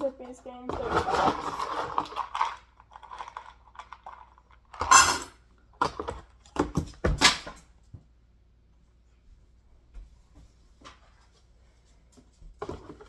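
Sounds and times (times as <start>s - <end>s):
bowls clattering: 0.7s - 6.2s.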